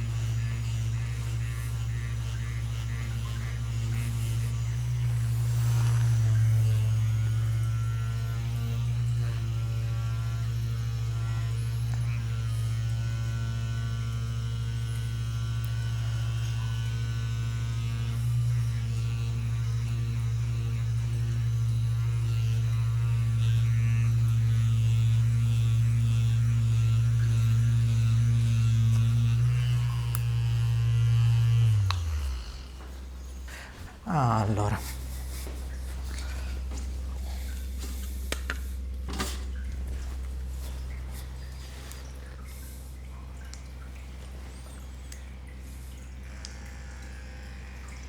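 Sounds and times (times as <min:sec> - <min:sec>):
massage device motor humming: 0:00.0 - 0:48.0.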